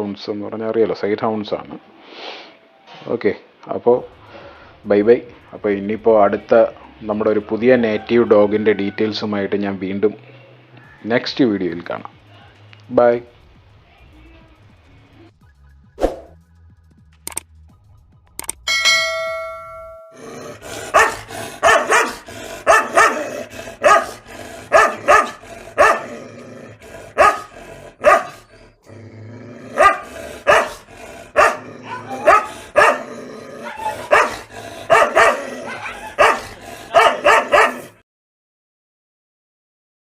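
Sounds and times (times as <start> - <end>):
short ringing chime: 18.7 - 20.2
dog barking: 20.6 - 26.2, 27.1 - 28.5, 29.7 - 38.0.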